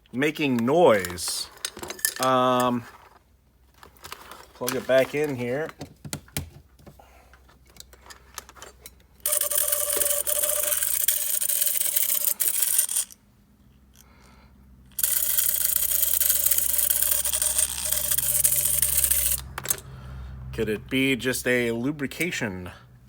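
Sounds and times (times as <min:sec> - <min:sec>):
pump rattling buzz and hum: 0:09.2 - 0:13.1, 0:14.9 - 0:19.8.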